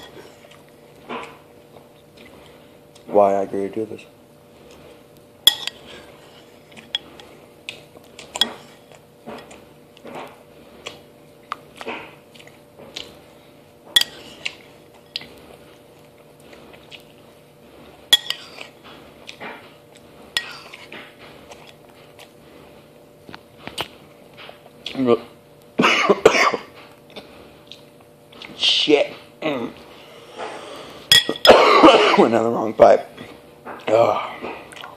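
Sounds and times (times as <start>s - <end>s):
spoon clinking on bowl: 5.5s - 5.8s, 31.1s - 31.5s.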